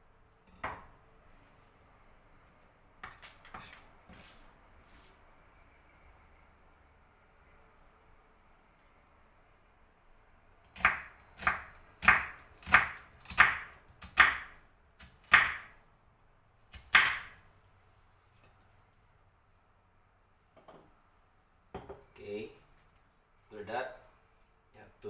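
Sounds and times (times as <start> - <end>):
knife slicing onion on board: 3.0 - 4.4, 10.7 - 15.8, 16.7 - 17.4.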